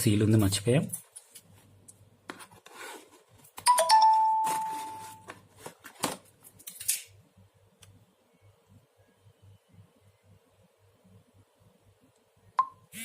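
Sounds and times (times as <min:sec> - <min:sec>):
packaging rustles and clicks: 0:04.4 - 0:06.9.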